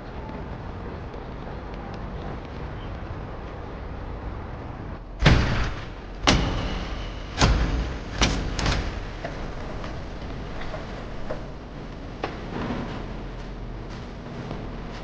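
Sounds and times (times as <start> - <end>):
steady background hiss: 0.0 - 15.0
sharp knocks: 5.2 - 13.3.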